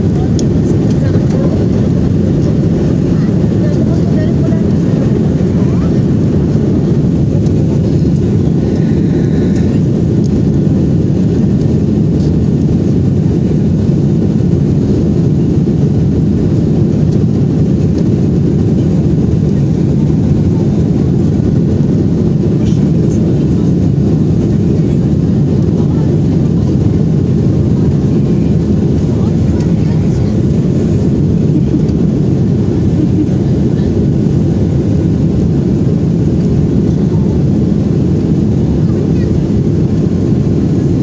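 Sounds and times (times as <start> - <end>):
airplane cabin engine rush: 0.0 - 41.0.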